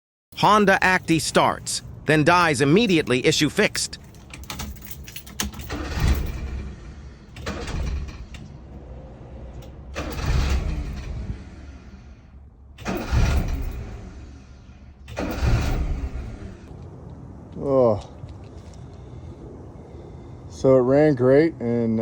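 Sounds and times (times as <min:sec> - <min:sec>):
engine cranking and dying: 0:00.4 - 0:16.7.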